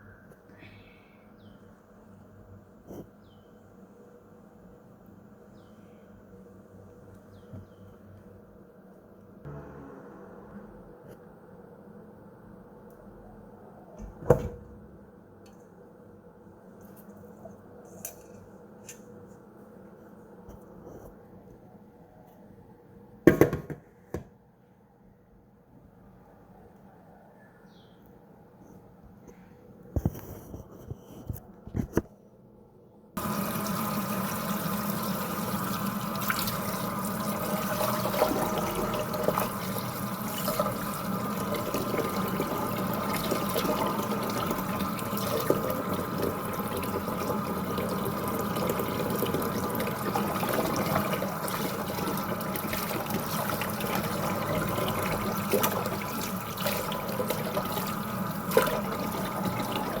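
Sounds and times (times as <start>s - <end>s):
tap water running into sink: 33.2s - 60.0s.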